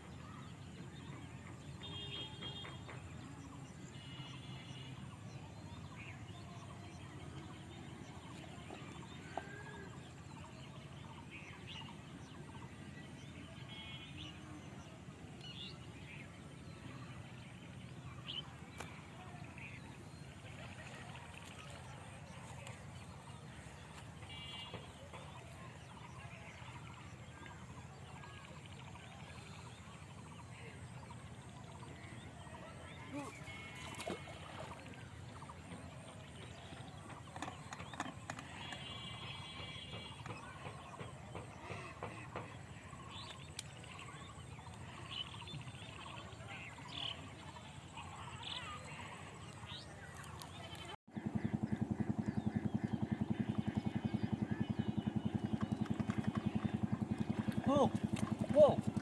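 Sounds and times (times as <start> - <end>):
low steady rumble: 51.1 - 59.0.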